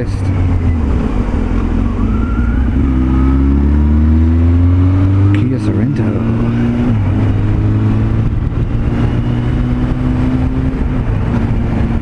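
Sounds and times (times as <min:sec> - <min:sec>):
road and wind noise: 0:00.0 - 0:12.0
motorcycle engine running: 0:04.6 - 0:12.0.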